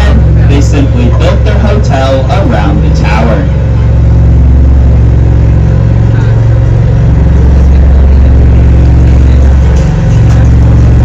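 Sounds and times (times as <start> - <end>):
boat engine droning: 0.0 - 11.0.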